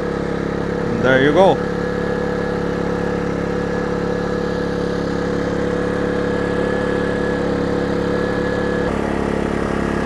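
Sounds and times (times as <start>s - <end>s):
generator engine humming: 0.0s - 10.0s.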